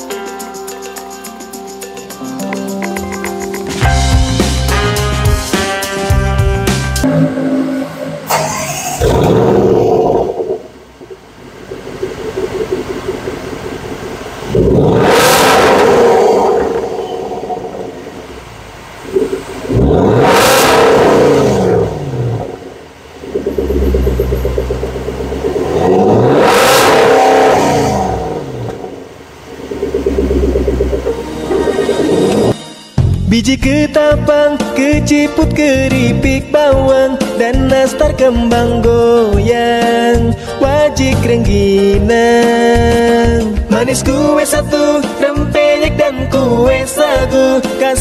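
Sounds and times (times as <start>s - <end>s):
car engine idling and revving: 6.6s - 33.2s.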